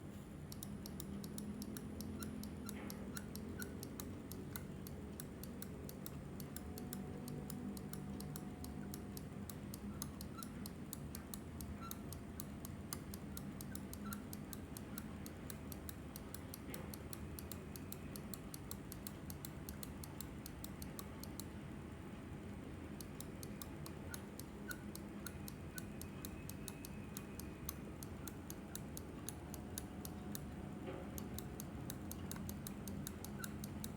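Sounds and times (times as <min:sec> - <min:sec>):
mouse clicks: 0:00.5 - 0:21.6, 0:22.9 - 0:33.9
mouse squeaking: 0:11.6 - 0:12.2.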